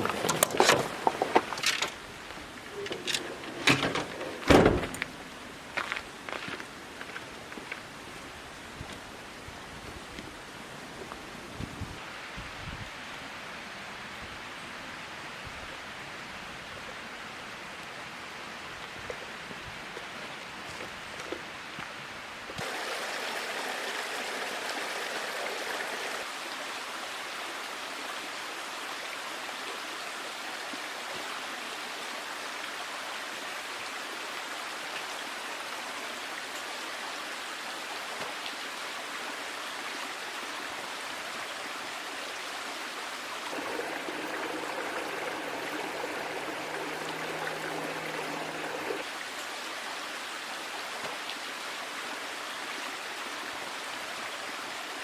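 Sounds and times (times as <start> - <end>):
creek babbling: 0.0 - 6.2, 22.6 - 26.3, 43.4 - 49.3.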